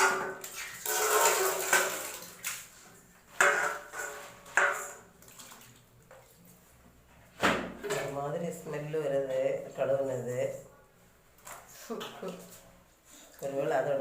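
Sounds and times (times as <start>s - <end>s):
water sloshing and splashing: 0.0s - 6.8s.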